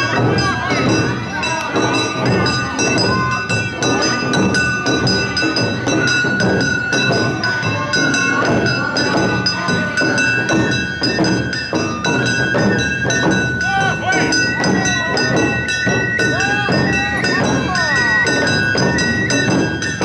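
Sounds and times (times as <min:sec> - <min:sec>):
drums beating quick rhythm: 0:00.0 - 0:20.0
bamboo flute high notes: 0:13.6 - 0:20.0.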